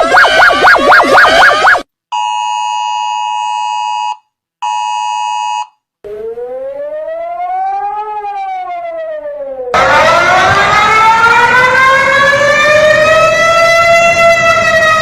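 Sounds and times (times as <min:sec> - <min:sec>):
two-tone alert tone: 0:00.0 - 0:01.8
fast warbling alarm tone: 0:00.0 - 0:01.9, 0:06.1 - 0:13.8
siren wail: 0:00.0 - 0:01.9, 0:06.0 - 0:15.0.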